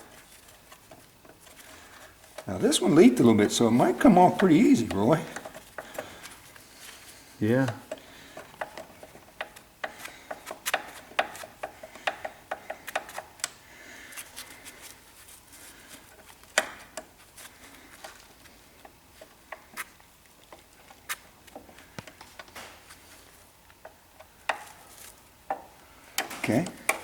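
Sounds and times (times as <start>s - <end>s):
hand tools clicking and tapping: 0.0s - 15.0s, 16.1s - 18.2s, 23.7s - 27.0s.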